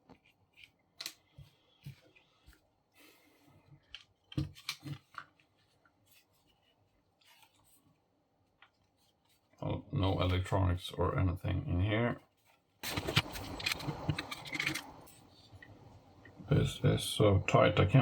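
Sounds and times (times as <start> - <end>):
brief plastic scrape: 12.8 - 15.2.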